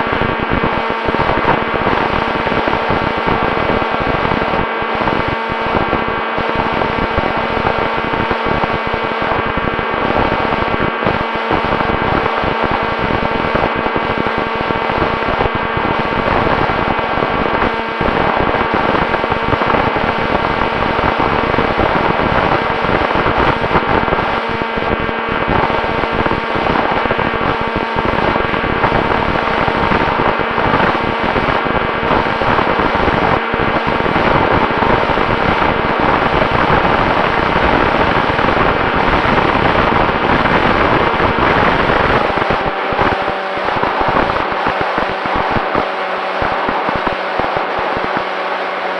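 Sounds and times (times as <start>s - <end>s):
wind noise: 0.0s - 48.9s
electric motor and propeller whine: 34.7s - 48.9s.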